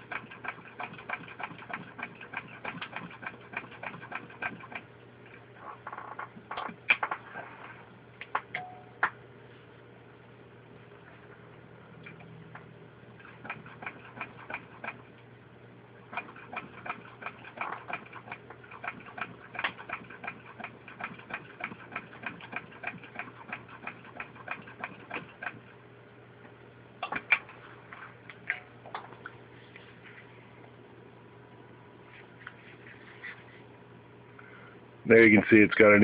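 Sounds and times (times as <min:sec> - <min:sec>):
sewing machine clicking: 0:00.0 - 0:04.9, 0:13.2 - 0:15.1, 0:16.1 - 0:25.6.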